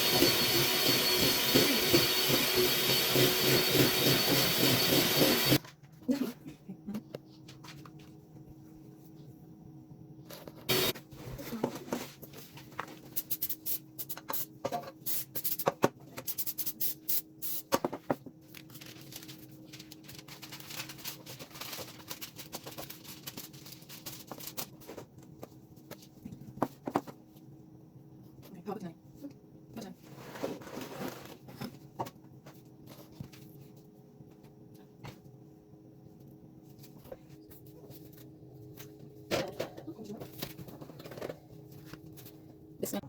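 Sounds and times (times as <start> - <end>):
scraping and rubbing: 30.0 - 31.5.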